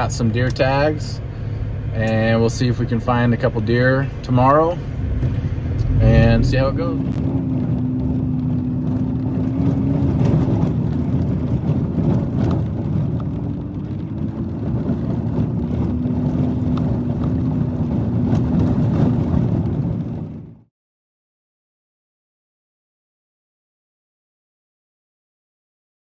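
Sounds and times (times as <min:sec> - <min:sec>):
engine and road noise in cabin: 0:00.0 - 0:20.7.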